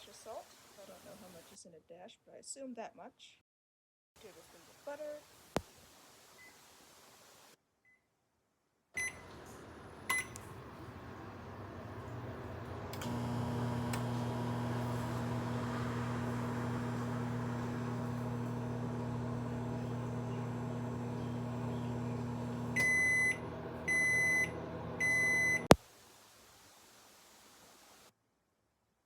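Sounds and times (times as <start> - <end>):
microwave oven humming: 9.0 - 25.8.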